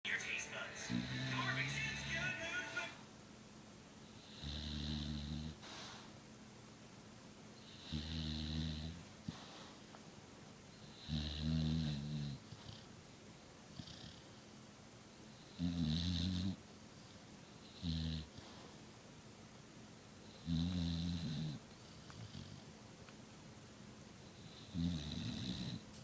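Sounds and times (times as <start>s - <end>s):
dog snoring: 0.8s - 2.2s, 4.1s - 6.1s, 7.6s - 9.7s, 10.8s - 12.9s, 13.7s - 14.4s, 15.3s - 16.6s, 17.6s - 18.8s, 20.2s - 22.7s, 24.2s - 26.0s.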